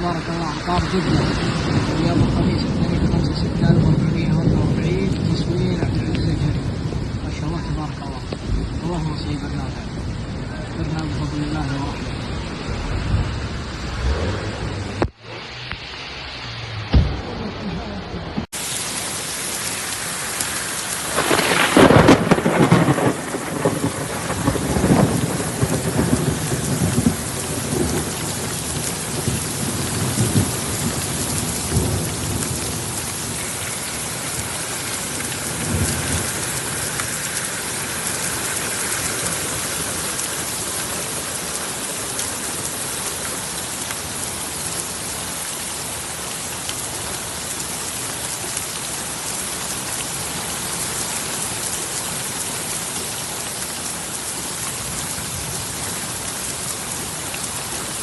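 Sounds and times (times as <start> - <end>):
heavy rain falling: 0.0 - 58.0
thunder clap and rumble: 0.5 - 10.5, 11.2 - 15.8, 21.0 - 37.1.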